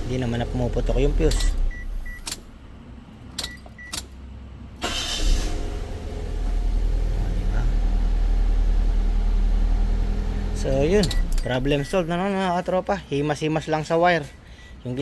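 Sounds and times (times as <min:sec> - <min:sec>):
car engine idling: 0:04.2 - 0:13.2.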